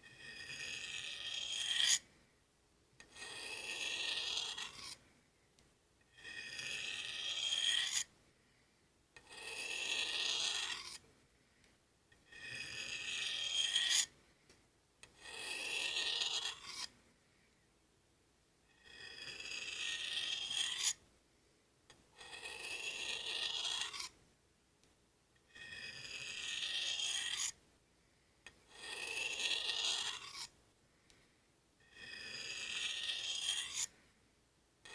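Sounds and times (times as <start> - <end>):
knife rasping on sharpening steel: 0.0 - 2.1, 3.1 - 5.0, 6.1 - 8.1, 9.2 - 11.0, 12.3 - 14.1, 15.1 - 16.9, 18.8 - 21.0, 22.2 - 24.2, 25.5 - 27.6, 28.7 - 30.6, 31.8 - 34.0.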